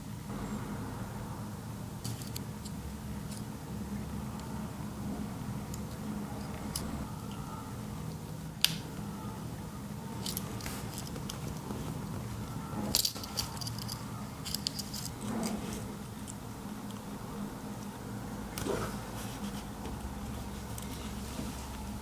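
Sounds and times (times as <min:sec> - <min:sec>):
steady low hum: 0:00.0 - 0:22.0
pocket knife tools clicking and rattling: 0:12.9 - 0:15.2.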